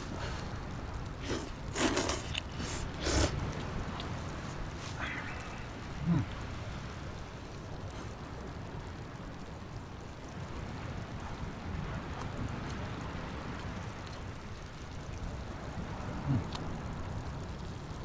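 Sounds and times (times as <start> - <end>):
sea surf rumbling: 2.5 - 7.4.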